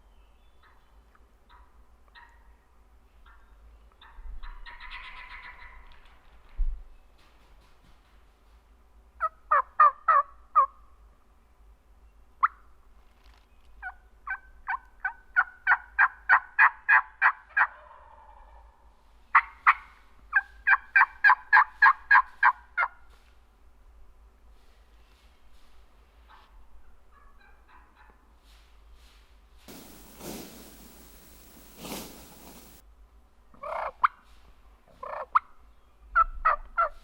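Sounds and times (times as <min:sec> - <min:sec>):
turkey yelping: 0:04.0 - 0:05.8, 0:09.2 - 0:10.7, 0:13.8 - 0:18.6, 0:19.3 - 0:22.9, 0:33.6 - 0:34.1, 0:36.2 - 0:36.9.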